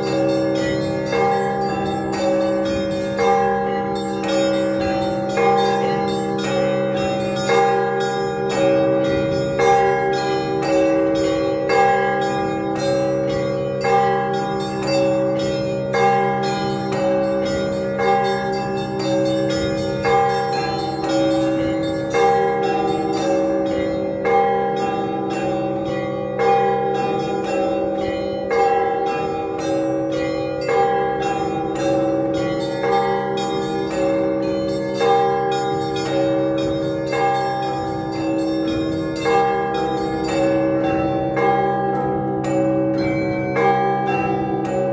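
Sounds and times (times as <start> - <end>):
church bells ringing: 0.0 - 44.9
low bells humming: 0.0 - 44.9.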